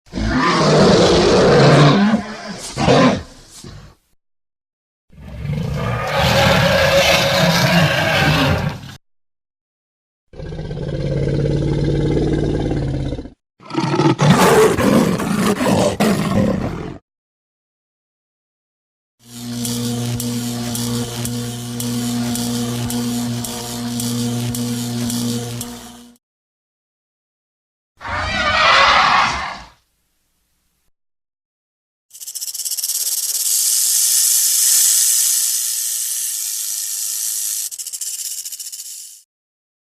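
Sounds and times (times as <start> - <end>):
low pitched roar: 10.4 - 17.0
loud fluttering hiss: 32.1 - 39.2.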